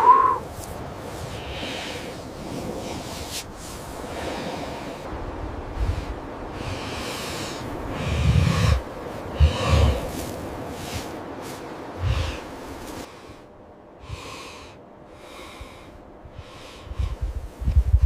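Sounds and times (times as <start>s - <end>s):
wind hiss: 0.0s - 18.0s
bear breathing and snorting: 6.6s - 13.4s.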